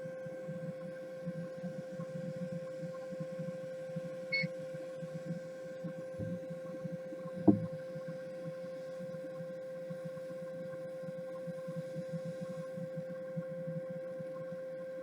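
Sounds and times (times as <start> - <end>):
electrical hum: 4.0 - 8.2
low fluttering throb: 6.2 - 6.4
sharp knock: 7.4 - 7.7.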